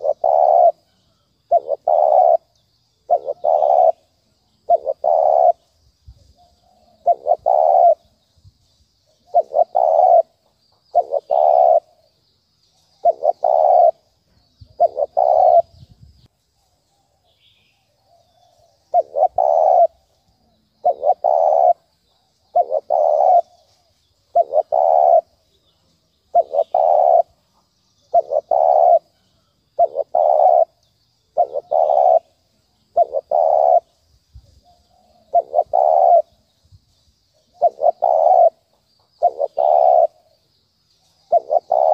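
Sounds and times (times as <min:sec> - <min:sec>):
dove cooing: 0:00.0 - 0:08.2, 0:09.1 - 0:12.1, 0:12.9 - 0:16.0, 0:18.0 - 0:27.4, 0:28.1 - 0:36.5, 0:37.4 - 0:40.4, 0:41.1 - 0:41.9.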